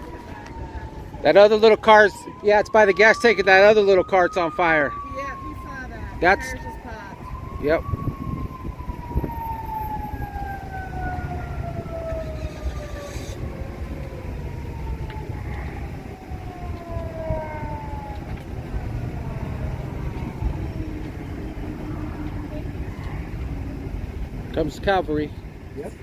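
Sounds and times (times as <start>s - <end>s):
fire engine siren wailing: 0.0s - 26.0s
low rumble: 5.0s - 26.0s.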